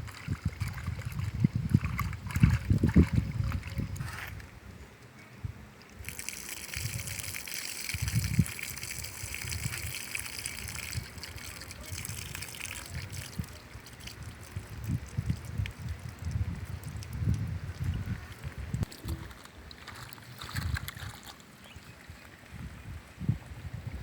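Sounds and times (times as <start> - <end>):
water pouring and splashing: 0.0 - 4.6, 5.8 - 23.8
wind on microphone: 0.0 - 4.8, 5.4 - 19.4, 20.4 - 24.0.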